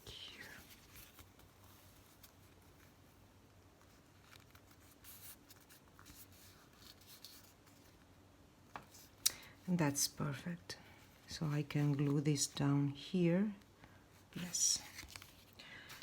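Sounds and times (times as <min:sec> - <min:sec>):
paper rustling: 0:00.4 - 0:03.0, 0:03.8 - 0:08.1, 0:14.4 - 0:16.0.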